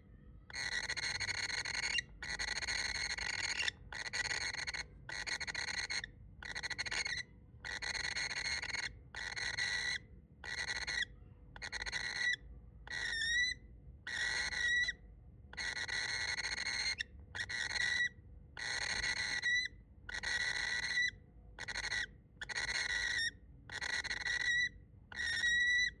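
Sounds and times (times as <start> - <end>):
baby bird hissing calls: 0.6 - 11.0.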